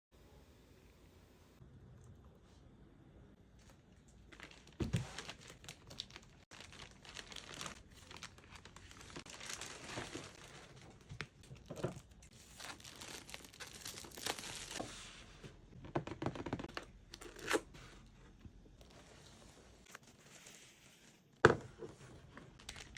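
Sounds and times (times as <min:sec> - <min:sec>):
packaging crinkling and tearing: 0:03.6 - 0:14.8, 0:22.6 - 0:22.9.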